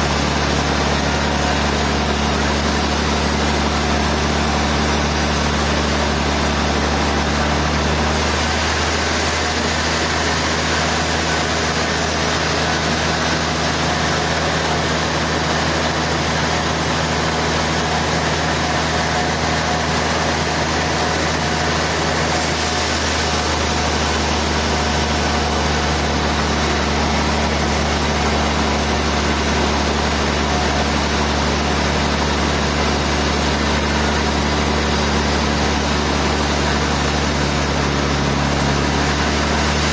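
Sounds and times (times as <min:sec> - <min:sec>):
sawmill engine drone: 0:00.0 - 0:39.9.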